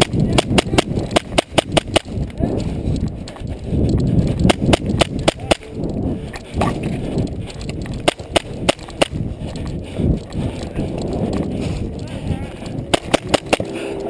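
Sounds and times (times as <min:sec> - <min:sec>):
airsoft pistol shots: 0:00.0 - 0:02.1, 0:12.9 - 0:13.6
movement noise: 0:00.0 - 0:14.0
heavy breathing: 0:02.0 - 0:14.0.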